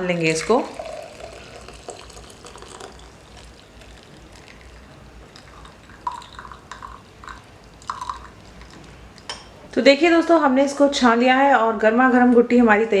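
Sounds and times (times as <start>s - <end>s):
liquid pouring into a glass: 0.4s - 9.4s.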